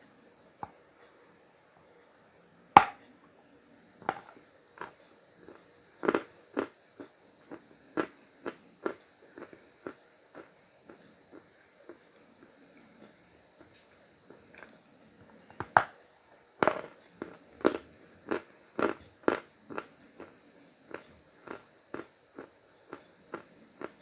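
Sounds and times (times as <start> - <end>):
crisp chewing crunches: 5.5 - 7.1, 16.6 - 24.0.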